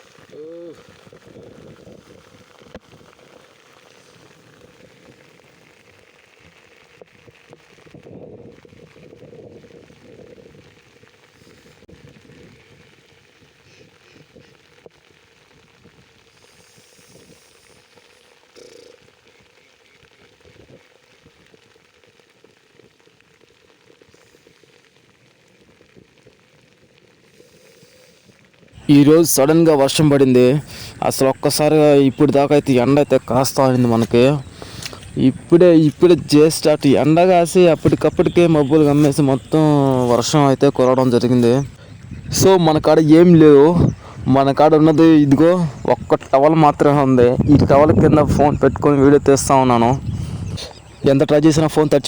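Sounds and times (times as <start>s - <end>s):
heavy rain patter: 0.0s - 52.0s
heavy rain falling: 28.8s - 52.0s.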